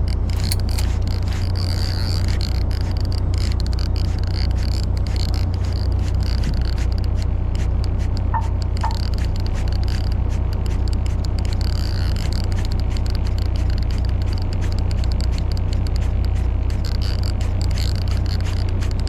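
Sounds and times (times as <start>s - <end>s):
short squeaks: 0.3s - 2.3s
fishing reel ticking: 0.3s - 2.8s
boat engine humming: 7.7s - 14.4s.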